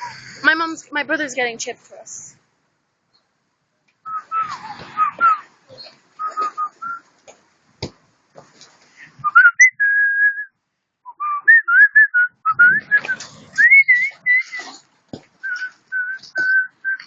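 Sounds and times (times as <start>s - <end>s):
person whistling a tune: 9.2s - 10.5s, 11.1s - 14.6s, 15.4s - 17.0s.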